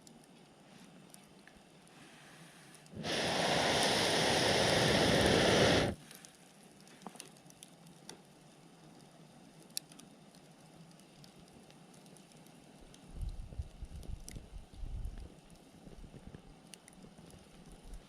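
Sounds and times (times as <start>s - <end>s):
campfire crackling and popping: 2.8s - 18.0s
loud rushing hiss: 3.0s - 6.0s.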